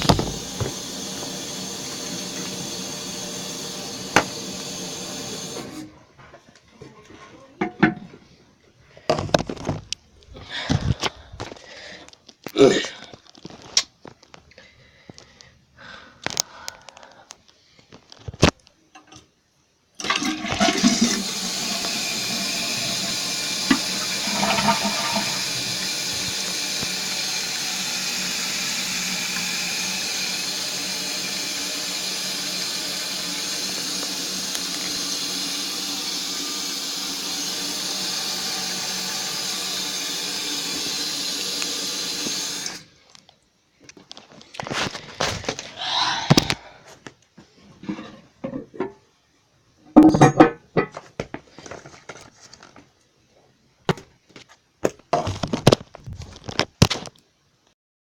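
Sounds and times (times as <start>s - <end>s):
toilet flushing: 0.0s - 5.9s, 20.0s - 42.9s
water rushing as tank refills: 0.0s - 5.9s, 20.0s - 42.9s.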